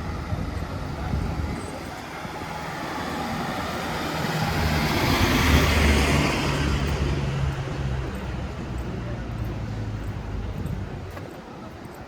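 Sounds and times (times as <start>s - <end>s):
vehicle passing by: 2.1s - 10.1s.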